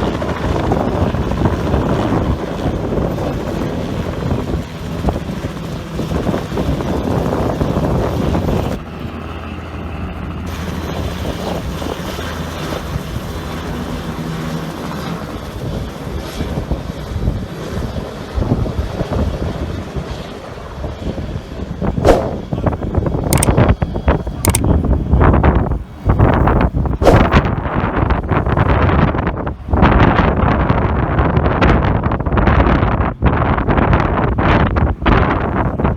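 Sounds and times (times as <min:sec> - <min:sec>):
helicopter taking off: 0:00.0 - 0:25.1.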